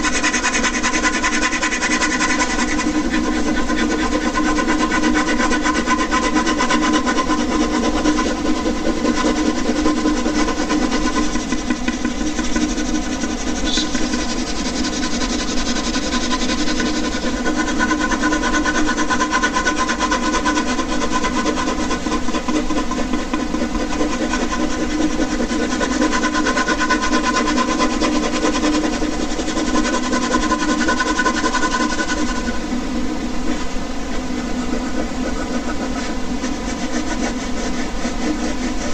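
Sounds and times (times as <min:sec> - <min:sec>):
air conditioner humming: 0:11.2 - 0:18.2.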